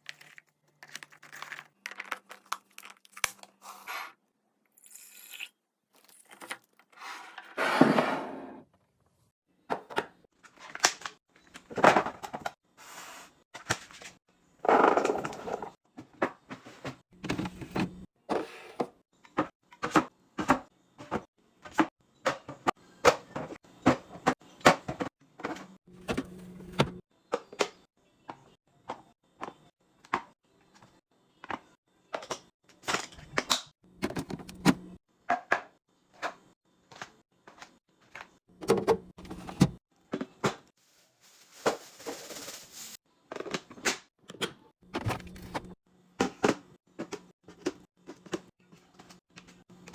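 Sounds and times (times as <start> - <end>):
groceries being handled: 0.0 - 4.1, 39.2 - 43.6
items clacking on fridge shelves: 13.6 - 40.7, 41.3 - 49.9.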